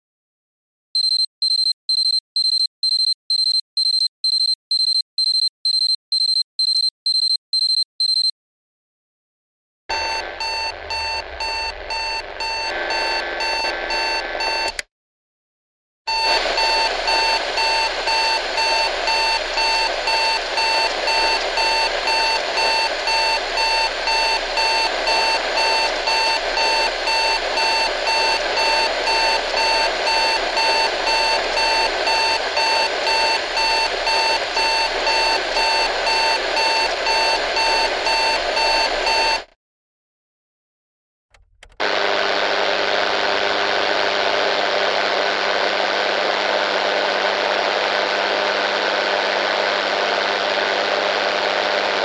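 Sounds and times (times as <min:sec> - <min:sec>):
digital alarm clock beeping: 0:01.0 - 0:08.3, 0:09.9 - 0:14.7, 0:16.1 - 0:39.5.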